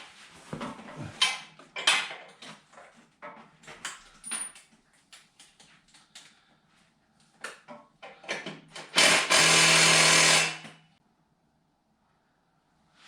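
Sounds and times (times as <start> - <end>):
cordless power tool running: 8.9 - 10.7.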